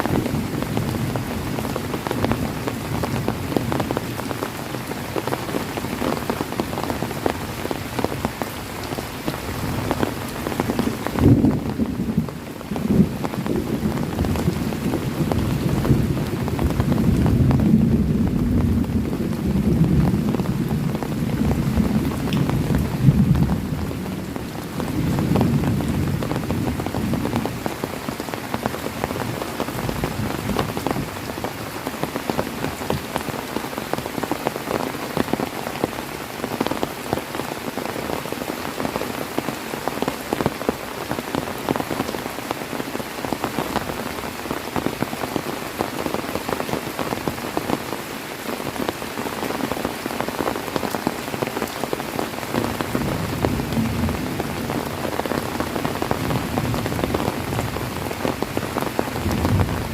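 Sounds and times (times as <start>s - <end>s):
heavy rain falling: 0.0s - 59.9s
low rumble of thunder: 10.8s - 27.6s, 52.6s - 59.9s.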